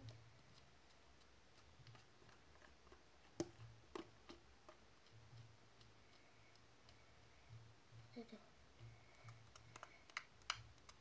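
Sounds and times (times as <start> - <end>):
sharp ticks: 0.0 - 7.6
slime clicking: 9.1 - 11.0.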